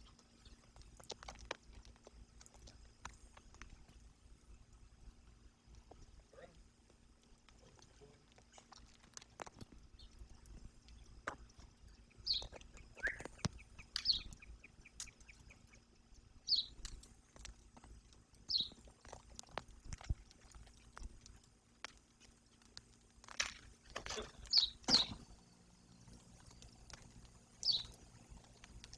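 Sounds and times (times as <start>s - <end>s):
birds chirping: 9.4s - 17.1s, 18.4s - 18.9s, 24.1s - 28.9s.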